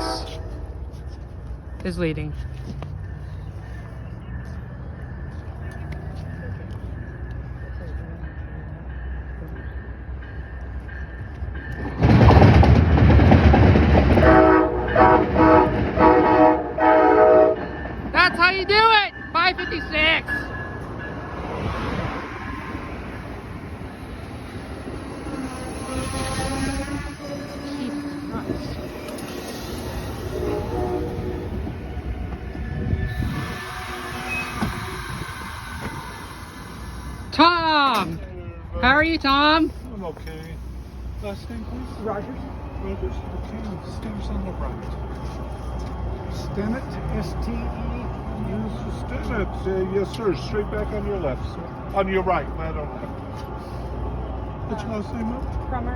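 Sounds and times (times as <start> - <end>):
train air horn blasts: 0.0 - 0.7, 14.2 - 17.7, 25.2 - 32.0, 32.7 - 37.7
train rushing past: 0.0 - 55.9
wheel and brake squeals: 32.5 - 36.2.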